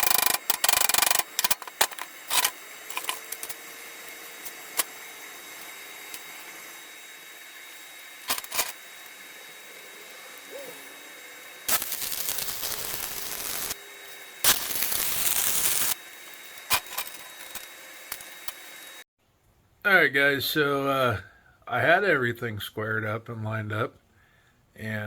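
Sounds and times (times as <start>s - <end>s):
crackling welding arc: 0.0s - 19.0s.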